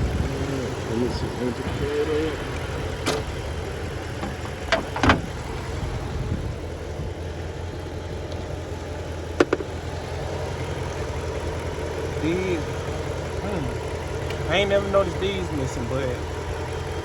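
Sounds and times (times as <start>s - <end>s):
car engine idling: 0.0s - 17.0s
car hood clunking open: 2.6s - 5.9s, 9.3s - 9.9s.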